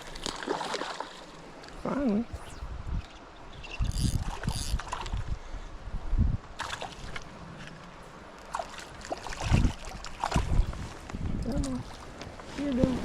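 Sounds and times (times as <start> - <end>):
water splashing: 0.0 - 3.3, 6.6 - 13.0
creek water running: 0.0 - 5.1, 6.6 - 13.0
wind buffeting microphone: 1.8 - 7.6, 9.0 - 13.0.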